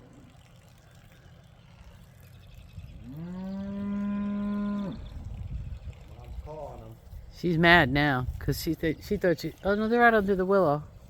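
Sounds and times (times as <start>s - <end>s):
cow mooing: 3.0s - 5.1s.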